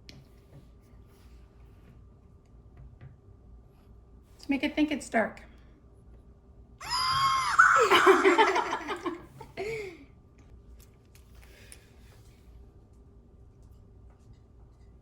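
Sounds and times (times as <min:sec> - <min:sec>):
toy squeal: 0:06.8 - 0:08.6
toy's electronic creepy laugh: 0:06.9 - 0:09.2.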